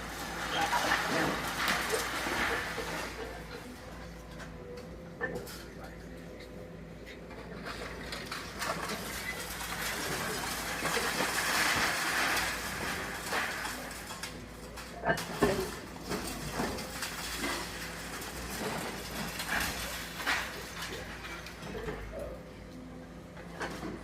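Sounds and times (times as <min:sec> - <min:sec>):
excavator machine noise: 0:00.0 - 0:24.0
debris knocking and clattering: 0:00.1 - 0:03.6, 0:07.6 - 0:22.2.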